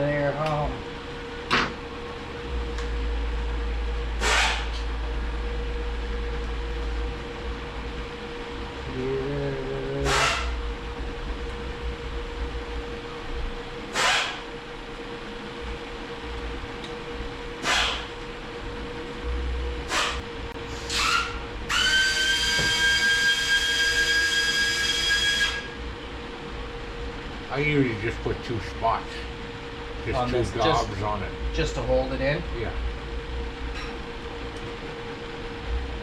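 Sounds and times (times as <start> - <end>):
air whistle: 20.8 - 25.8.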